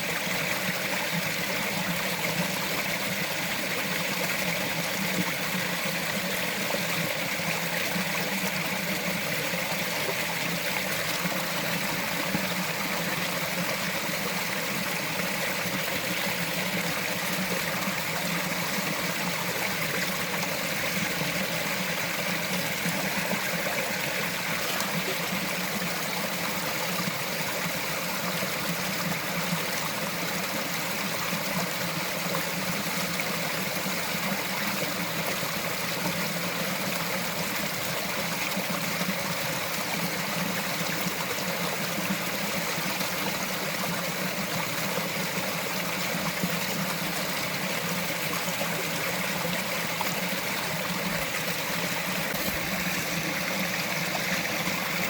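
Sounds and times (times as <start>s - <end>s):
stream trickling over rocks: 0.0s - 55.0s.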